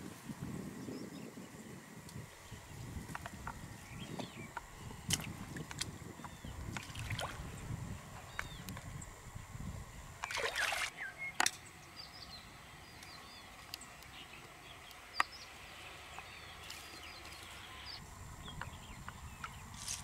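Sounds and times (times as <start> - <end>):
river water sloshing and trickling: 5.0 - 7.7, 10.2 - 11.1
water splash: 6.7 - 7.5, 10.2 - 10.9.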